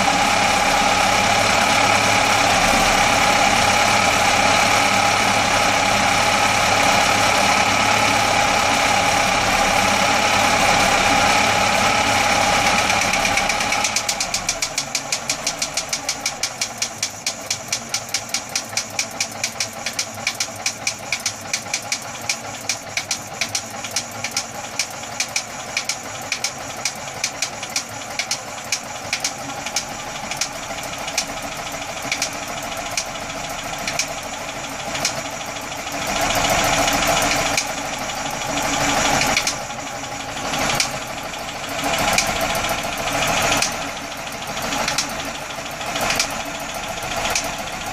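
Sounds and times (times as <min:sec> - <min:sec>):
engine popping at idle: 0:12.6 - 0:47.9.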